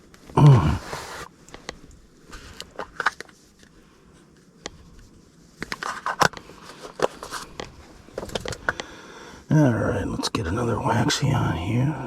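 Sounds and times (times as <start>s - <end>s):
fishing gear clicks and rustling: 1.4s - 8.9s.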